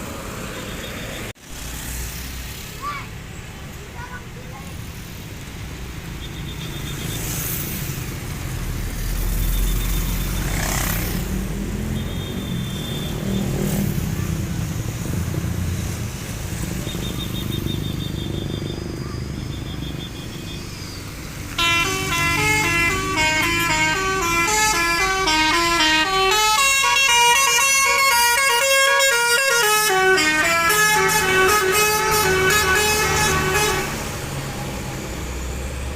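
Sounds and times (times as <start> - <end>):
bus engines rumbling: 0.0 - 35.9
multi-tone musical horn melody: 21.5 - 34.2.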